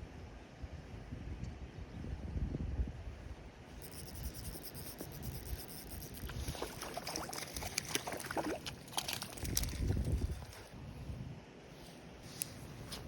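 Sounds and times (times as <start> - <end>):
wind rumble on microphone: 0.0 - 13.0
water splashing and clicking: 3.8 - 10.7.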